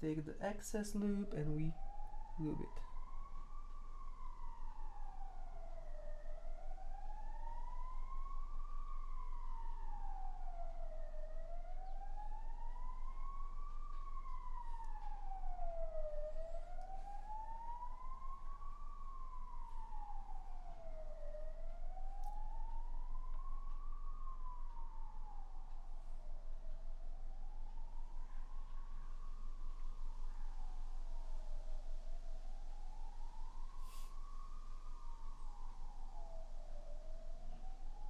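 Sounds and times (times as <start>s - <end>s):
emergency siren wailing: 0.0s - 38.0s
faint clicks: 22.2s - 24.9s.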